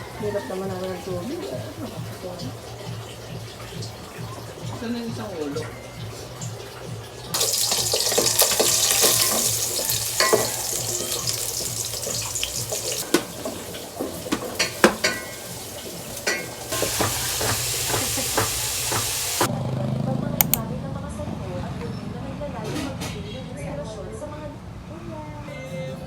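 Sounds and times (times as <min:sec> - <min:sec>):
utensils clinking on pots: 0:00.5 - 0:19.5
steady hiss: 0:16.1 - 0:19.5.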